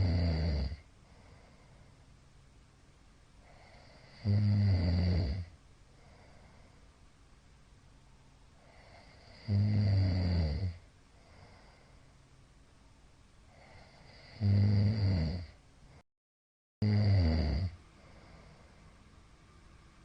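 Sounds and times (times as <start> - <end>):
man snoring loudly: 0.0 - 0.8, 3.6 - 5.5, 8.7 - 10.8, 13.6 - 15.6, 16.8 - 17.8
quiet breathing: 0.0 - 7.4, 8.2 - 14.6, 15.3 - 16.0, 17.6 - 19.6.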